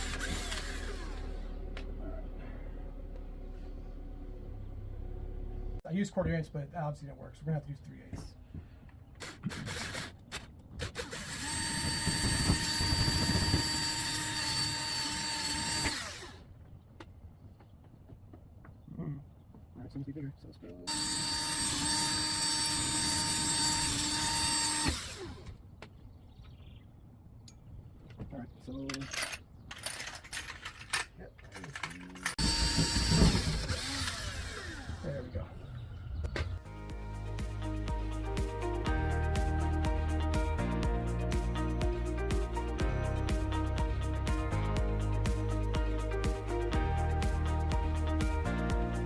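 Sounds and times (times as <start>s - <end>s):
cordless drill running: 0.0s - 1.6s, 9.2s - 16.5s, 20.9s - 25.6s, 32.4s - 35.1s.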